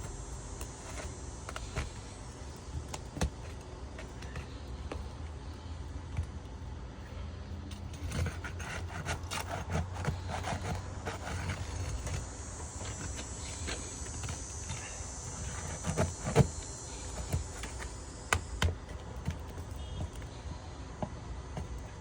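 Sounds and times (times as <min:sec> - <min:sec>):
hand tool scraping shingles: 0:00.0 - 0:04.6, 0:07.9 - 0:20.2
steady low hum: 0:00.0 - 0:22.0.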